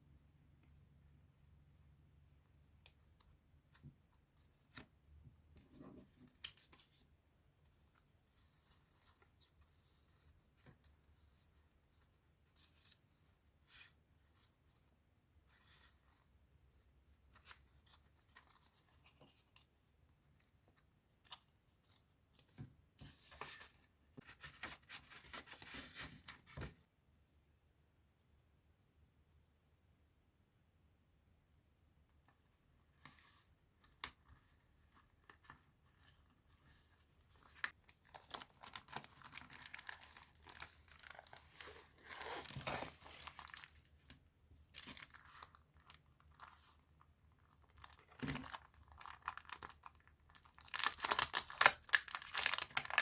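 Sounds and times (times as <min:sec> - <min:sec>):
paper and wrapping rustling: 0:20.7 - 0:26.9, 0:34.3 - 0:53.0.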